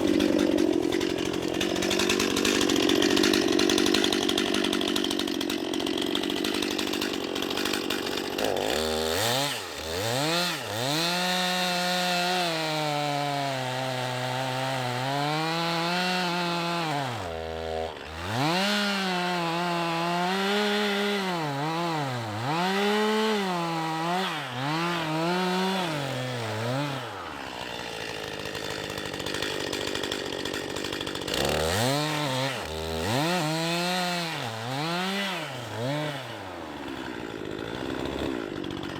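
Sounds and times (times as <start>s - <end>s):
chainsaw cutting log: 0.0s - 38.9s.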